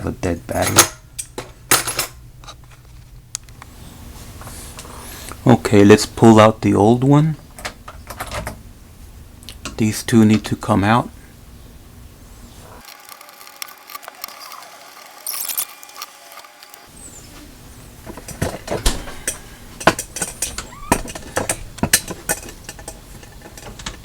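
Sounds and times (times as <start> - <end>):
metallic squeaking of screws: 14.3 - 15.9, 20.2 - 21.6
metal lock parts clicking: 18.3 - 24.0.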